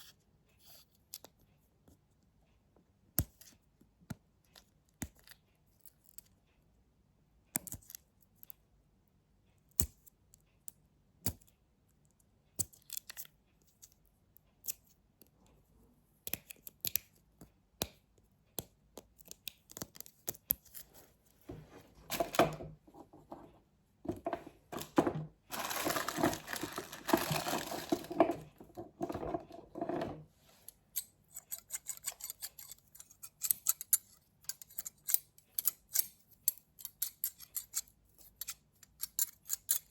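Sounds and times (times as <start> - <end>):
scratching and rustling: 20.7 - 30.7
tapping and knocking on objects: 21.5 - 30.2.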